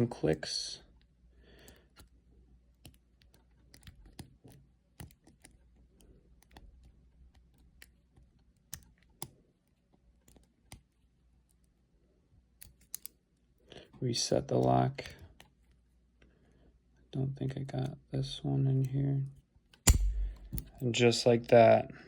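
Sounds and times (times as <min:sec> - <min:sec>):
padlock pins clicking: 0:02.8 - 0:09.4, 0:12.6 - 0:13.2.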